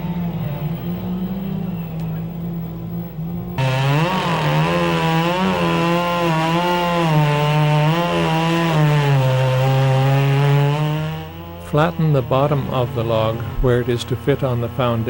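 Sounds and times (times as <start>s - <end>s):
chainsaw cutting into log: 3.6s - 15.0s.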